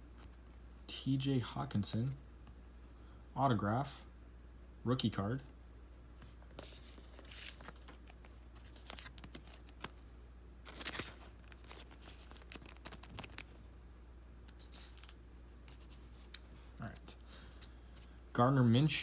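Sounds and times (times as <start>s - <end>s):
wrapper crinkling and tearing: 7.1s - 13.6s, 14.6s - 15.2s.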